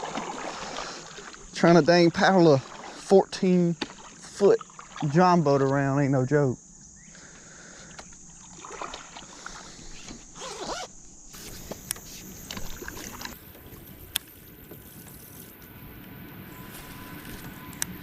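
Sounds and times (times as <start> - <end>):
paddle swishing through water: 0.0 - 5.7, 8.4 - 10.2, 11.4 - 17.7.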